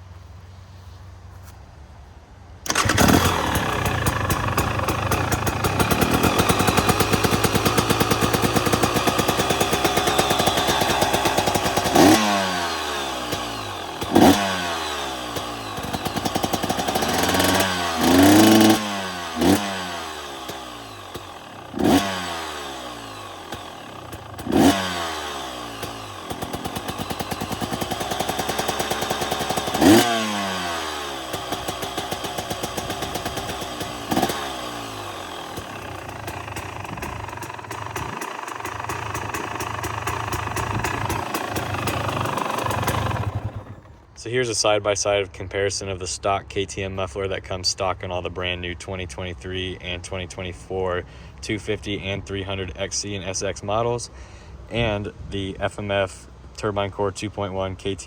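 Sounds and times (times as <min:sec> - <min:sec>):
engine revving blips: 0:02.7 - 0:44.0
two-stroke engine idling: 0:02.7 - 0:44.2.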